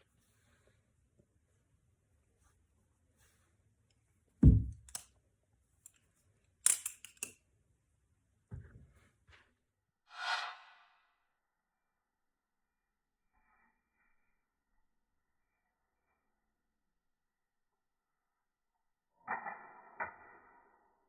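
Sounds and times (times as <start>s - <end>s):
butterfly knife handles clacking: 6.7s - 7.4s
short rush of noise: 10.1s - 11.0s.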